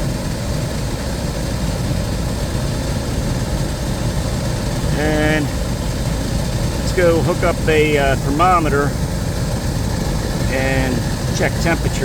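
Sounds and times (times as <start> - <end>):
air conditioner humming: 4.9 - 9.0.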